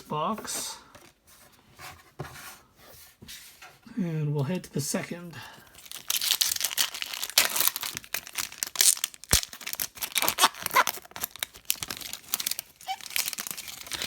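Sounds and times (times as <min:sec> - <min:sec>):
packaging tearing and crinkling: 0:05.8 - 0:14.0.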